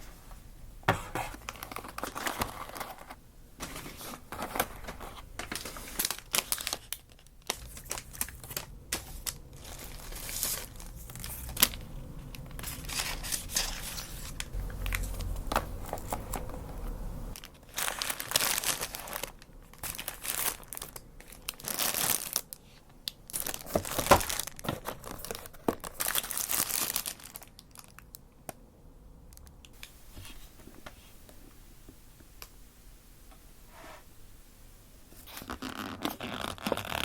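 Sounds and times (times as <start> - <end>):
food packaging crinkling and tearing: 1.3 - 16.6, 17.3 - 22.6, 23.2 - 28.2.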